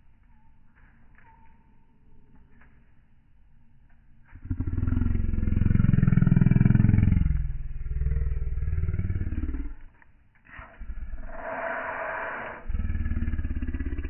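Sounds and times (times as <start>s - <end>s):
lion growling: 4.4s - 14.0s.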